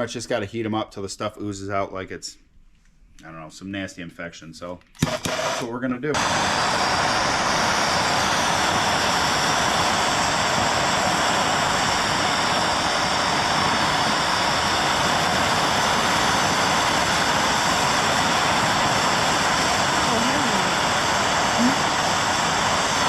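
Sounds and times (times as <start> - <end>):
gas torch roaring: 5.0 - 23.0.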